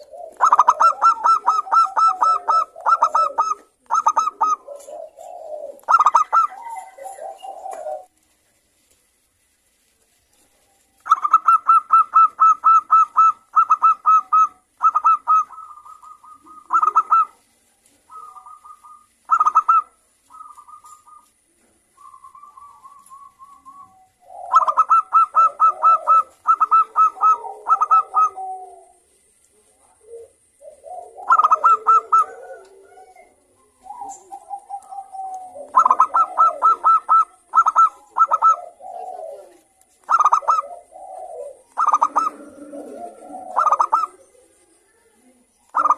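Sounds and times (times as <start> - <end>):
doves rapid cooing: 0.0 - 8.2, 10.5 - 45.9
low rolling coos: 29.9 - 39.8, 40.5 - 45.9.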